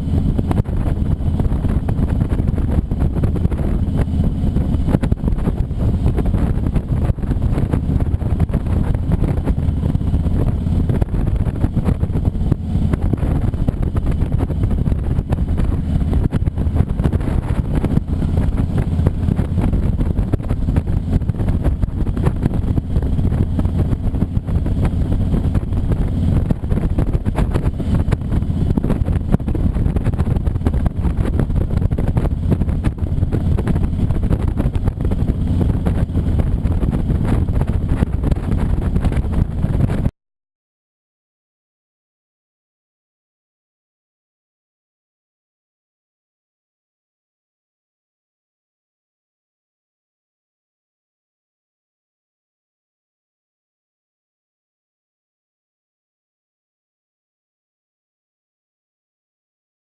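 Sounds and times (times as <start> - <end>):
motorcycle engine running: 0.0 - 40.1
wind rushing over microphone: 0.0 - 40.1.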